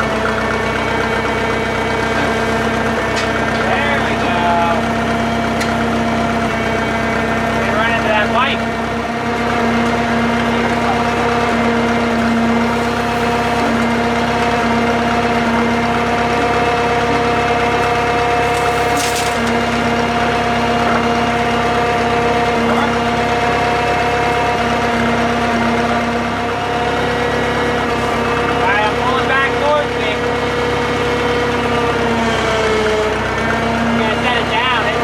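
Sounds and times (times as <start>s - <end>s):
crane engine running: 0.0s - 35.0s.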